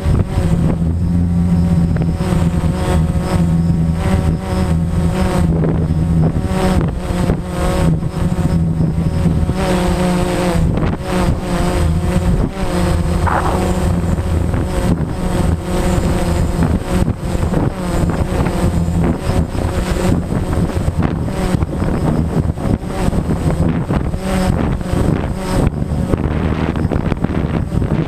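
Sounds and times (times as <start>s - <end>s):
drone propellers whining: 10.6s - 22.5s
wind buffeting microphone: 10.6s - 28.0s.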